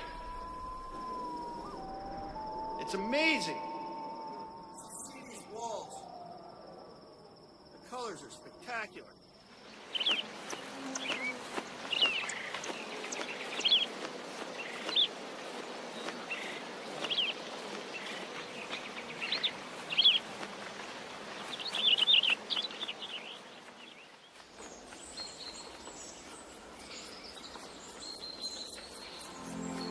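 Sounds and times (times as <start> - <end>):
faint high tones: 0.0 - 8.6
birds chirping: 0.0 - 29.9
outdoor ambience: 0.0 - 29.9.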